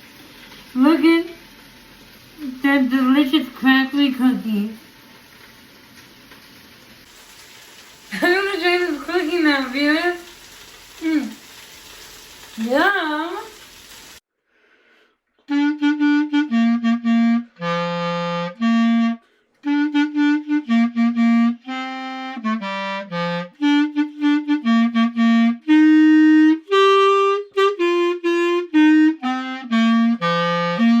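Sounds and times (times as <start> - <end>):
instrumental melody: 15.5 - 31.0.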